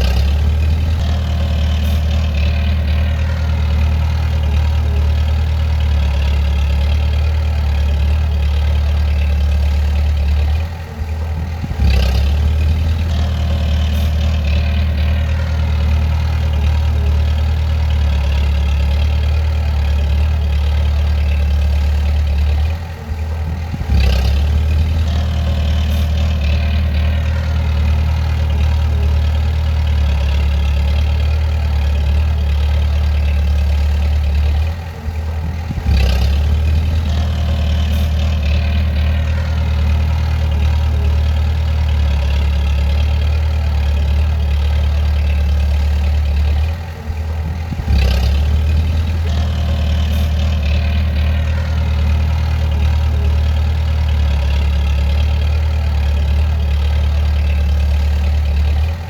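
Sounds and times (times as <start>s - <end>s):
bulldozer diesel engine running: 0.0s - 59.0s.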